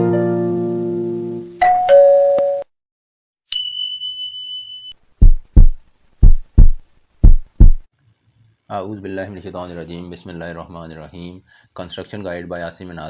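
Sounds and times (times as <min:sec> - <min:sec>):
two-tone chime: 0:01.6 - 0:02.7, 0:03.5 - 0:05.0
low heartbeat-like thumps: 0:05.2 - 0:07.9.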